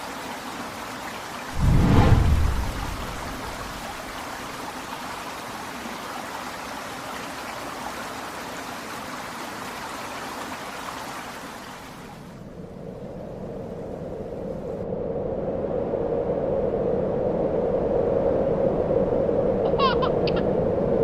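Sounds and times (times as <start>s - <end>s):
rushing water: 0.0s - 12.5s.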